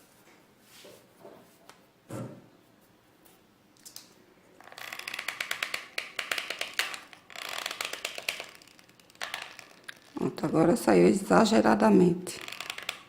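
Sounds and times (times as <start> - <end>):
glue gun ratcheting clicks: 4.6 - 10.1, 12.4 - 13.0.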